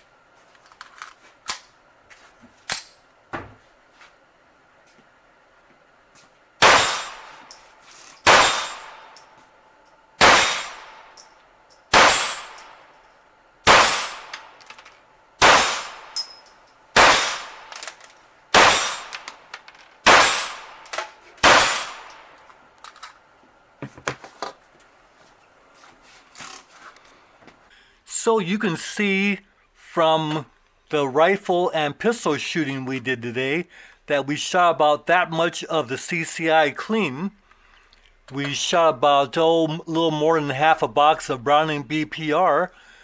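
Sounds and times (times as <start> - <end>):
pistol shots with ringing tail: 6.6 - 7.6, 8.2 - 9.3, 10.2 - 11.2, 11.9 - 12.9, 13.6 - 14.6, 15.4 - 17.8, 18.5 - 22.4
small metallic clicks: 17.6 - 18.2, 19.0 - 20.0.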